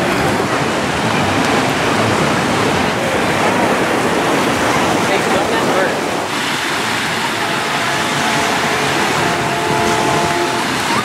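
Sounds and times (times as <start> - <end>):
faint distant voices: 0.0 - 11.0
surf rushing on beach: 0.0 - 11.0
wind buffeting microphone: 0.0 - 11.0.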